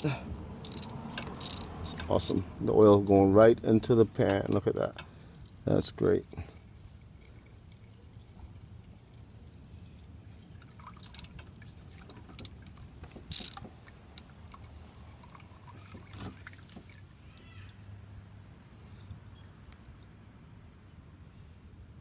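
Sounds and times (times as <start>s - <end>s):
oil dribbling into a pan: 5.1s - 12.8s, 13.8s - 18.1s.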